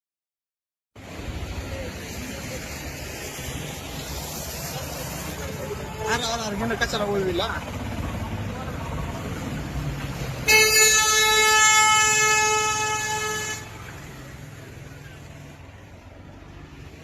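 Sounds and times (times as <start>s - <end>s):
vehicle horn blast: 10.4s - 13.9s.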